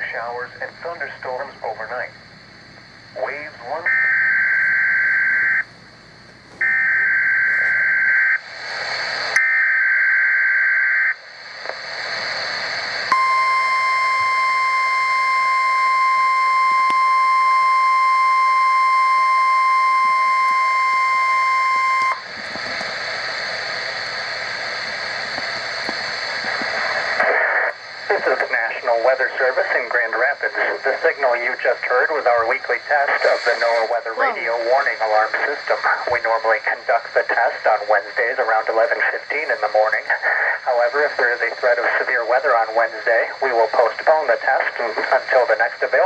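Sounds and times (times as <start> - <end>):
radio static hiss: 0.0 - 46.0
steady warning alarm tone: 3.2 - 8.4, 13.1 - 27.2.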